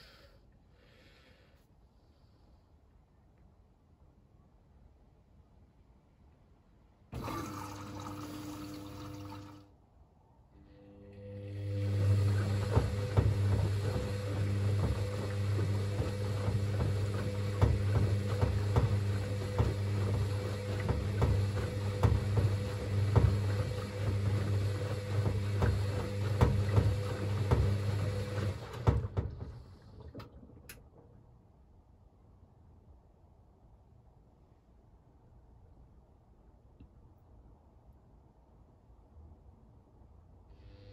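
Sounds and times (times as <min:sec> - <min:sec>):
washing machine motor humming: 0:07.1 - 0:09.7, 0:10.8 - 0:31.1
knocks in washing machine drum: 0:12.3 - 0:29.6.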